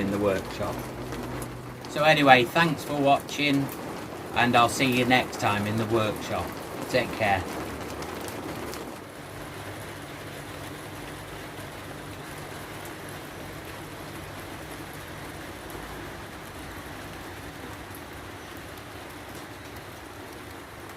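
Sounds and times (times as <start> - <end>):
steady rain falling: 0.0 - 20.9.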